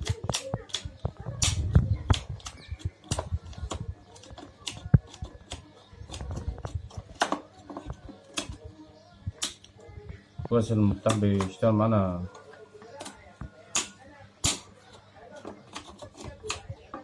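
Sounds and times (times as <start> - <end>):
plastic switch clicking: 13.0 - 14.7.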